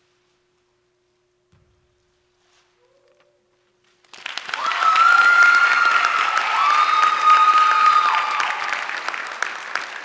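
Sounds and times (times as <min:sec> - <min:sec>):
audience clapping: 0:04.0 - 0:10.0.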